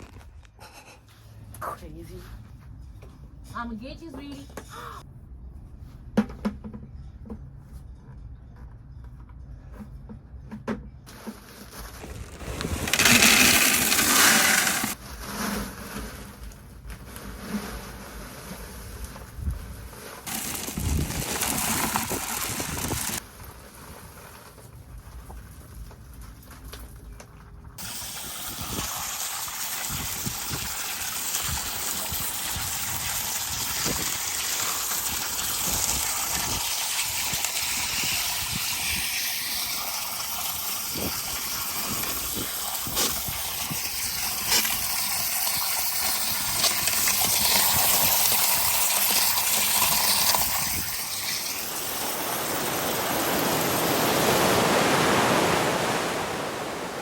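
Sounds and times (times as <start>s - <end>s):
pebbles clicking and knocking: 11.8s - 15.0s, 20.3s - 23.2s
water gushing over clay pebbles: 11.8s - 15.0s, 15.8s - 23.2s, 27.8s - 54.6s.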